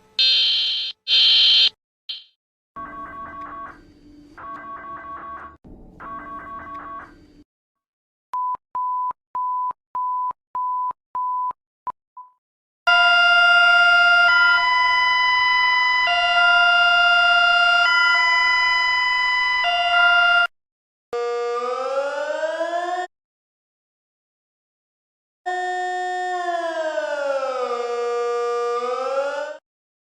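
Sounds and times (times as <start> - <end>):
short even beeps: 0.2 - 2.3
siren winding up: 0.2 - 2.3, 13.0 - 20.5, 25.5 - 29.6
multi-tone alarm: 0.2 - 3.8, 12.9 - 20.5.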